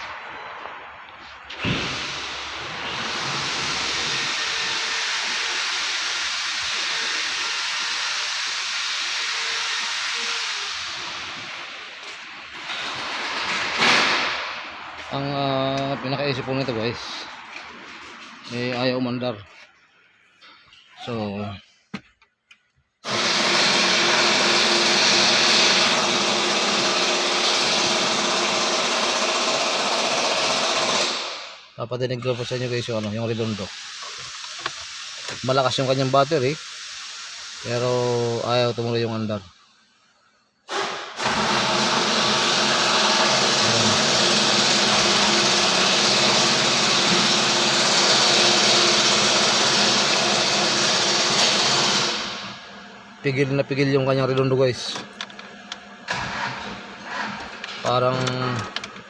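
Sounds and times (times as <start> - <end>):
diesel engine cranking without starting: 0.0 - 9.2, 10.0 - 17.6, 40.7 - 52.8, 54.3 - 59.0
starter motor cranking engine: 23.0 - 31.4, 40.8 - 52.5, 54.4 - 59.0.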